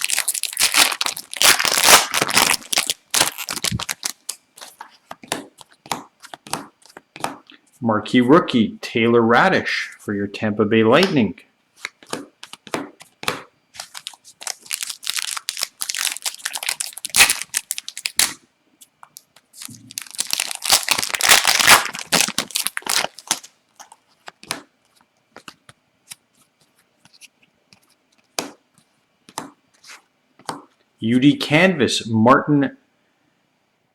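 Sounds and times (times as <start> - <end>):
wrapper tearing and crinkling: 0.0 - 4.8, 13.8 - 18.4, 19.6 - 24.0.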